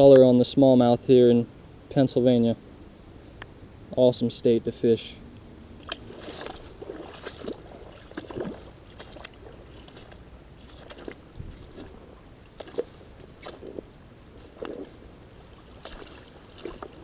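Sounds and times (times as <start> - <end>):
creek water splashing: 5.8 - 17.0.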